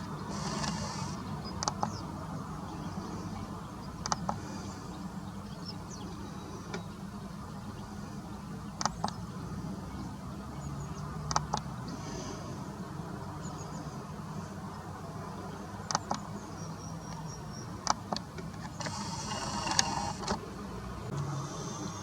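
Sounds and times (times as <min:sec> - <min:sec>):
bird chirps: 0:00.0 - 0:11.2, 0:15.8 - 0:17.9
sharp clicks: 0:00.3 - 0:02.0, 0:04.0 - 0:04.4, 0:08.8 - 0:09.2, 0:11.3 - 0:11.7, 0:15.9 - 0:16.3, 0:17.8 - 0:20.4.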